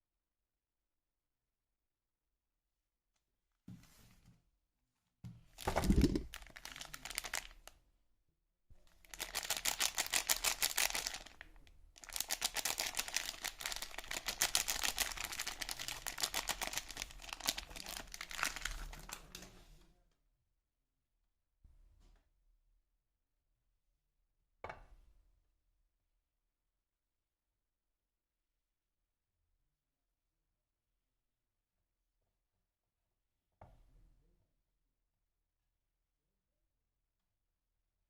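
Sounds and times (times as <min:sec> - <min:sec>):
soap packaging crinkling: 0:05.6 - 0:07.7, 0:08.9 - 0:19.4.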